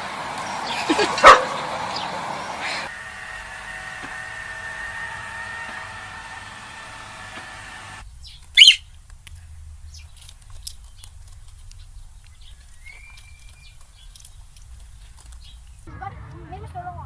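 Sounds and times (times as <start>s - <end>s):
faint clicks: 8.0s - 15.9s
high-pitched squawk: 8.2s - 9.0s
brief high chirp: 8.6s - 8.8s.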